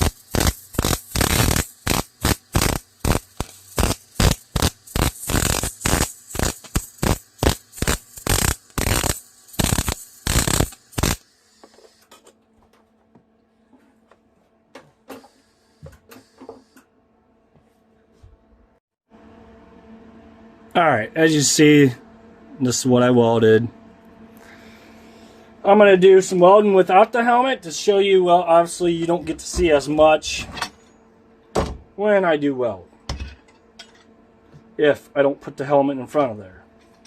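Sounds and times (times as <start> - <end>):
arc welding crackling: 0.0 - 12.0.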